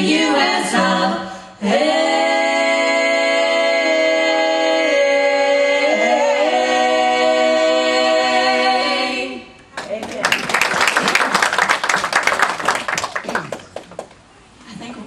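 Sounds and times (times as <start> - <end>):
vocal group singing harmony: 0.0 - 9.7.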